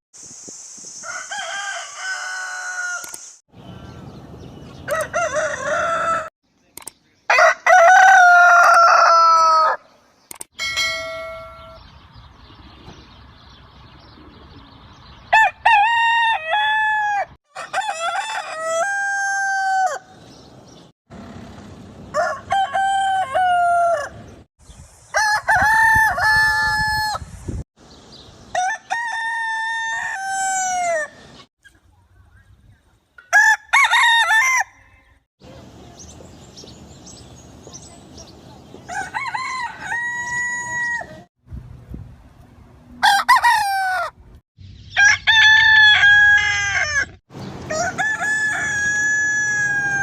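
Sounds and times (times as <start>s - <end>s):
roosters crowing: 1.0s - 3.3s, 4.7s - 6.3s, 7.3s - 9.9s, 15.3s - 24.5s, 25.1s - 27.3s, 28.5s - 31.4s, 33.3s - 35.2s, 38.8s - 41.3s, 43.0s - 44.2s, 44.9s - 50.0s.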